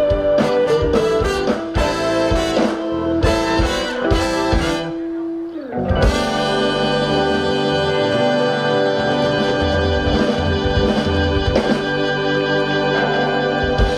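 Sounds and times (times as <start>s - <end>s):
drums hitting: 0.0s - 5.2s, 5.8s - 8.2s, 9.4s - 12.4s
live band with horns and guitar: 0.0s - 13.9s.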